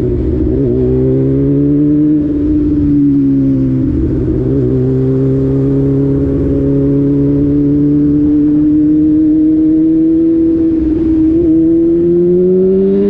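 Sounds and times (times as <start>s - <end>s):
vehicle engine at high revs: 0.0s - 13.0s.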